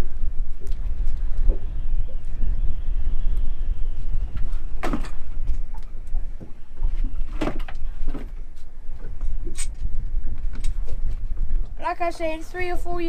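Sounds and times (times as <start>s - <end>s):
wind buffeting microphone: 0.0s - 13.0s
knocks and clunks on boat: 4.4s - 11.3s.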